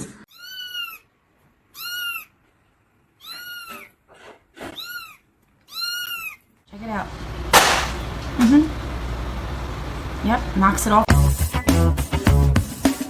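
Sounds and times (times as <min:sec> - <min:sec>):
kitten mewing: 0:01.7 - 0:02.3, 0:03.2 - 0:04.0, 0:04.6 - 0:06.4.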